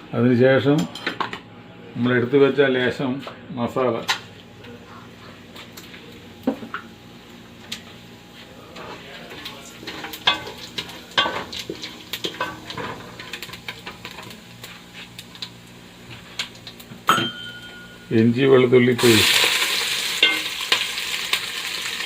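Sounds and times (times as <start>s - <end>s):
spices sizzling in oil: 6.4s - 22.0s.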